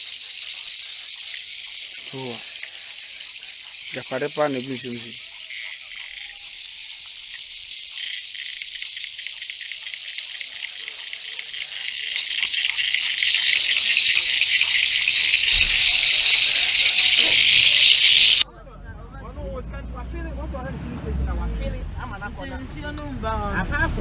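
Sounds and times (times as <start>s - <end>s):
frogs trilling: 0.0s - 18.5s.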